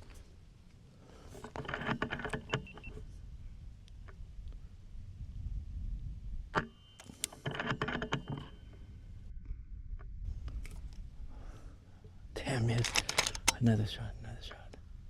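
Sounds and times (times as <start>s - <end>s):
low wind rumble on microphone: 2.8s - 6.6s, 8.6s - 12.7s, 13.7s - 15.0s
rapid clicking and rattling: 12.8s - 13.6s.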